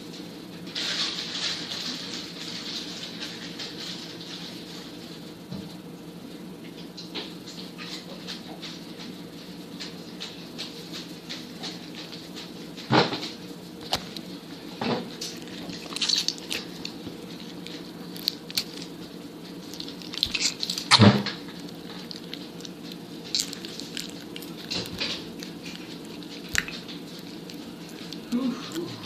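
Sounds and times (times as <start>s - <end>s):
slime squishing and popping: 15.3s - 18.9s, 19.7s - 28.2s.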